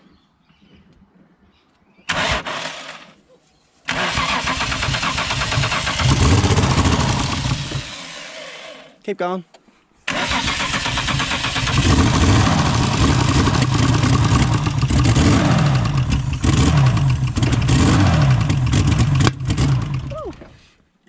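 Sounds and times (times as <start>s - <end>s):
car engine cranking: 2.1s - 3.0s, 3.9s - 8.8s, 10.1s - 20.6s
engine revving unevenly: 2.1s - 3.0s, 3.9s - 8.9s, 10.1s - 20.5s.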